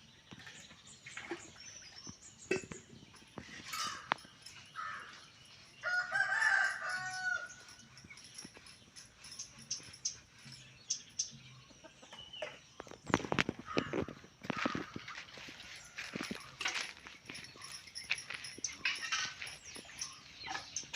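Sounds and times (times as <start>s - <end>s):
rooster crowing: 5.8s - 7.6s.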